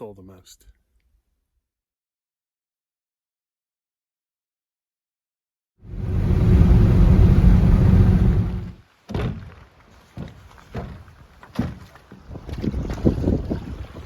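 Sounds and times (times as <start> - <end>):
wind buffeting microphone: 5.9 - 8.8, 12.2 - 14.0.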